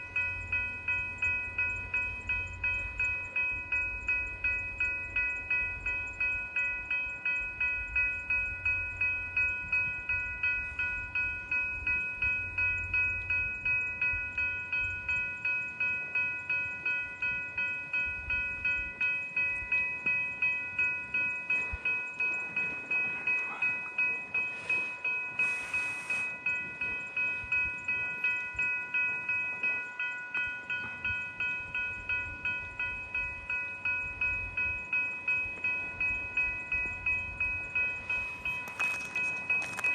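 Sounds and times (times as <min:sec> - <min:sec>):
level-crossing warning bell ringing: 0:00.0 - 0:39.9.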